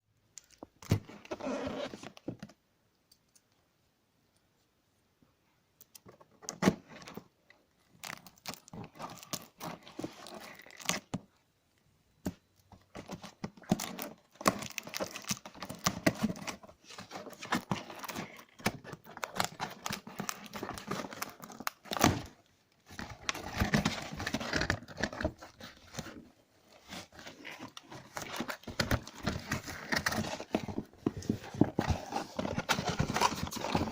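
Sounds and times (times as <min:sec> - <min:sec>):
packaging tearing and crinkling: 0:13.6 - 0:26.1, 0:31.5 - 0:33.9.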